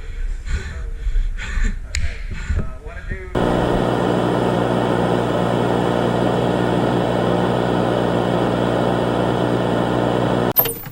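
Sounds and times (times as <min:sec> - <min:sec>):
engine drone: 0:03.4 - 0:10.6.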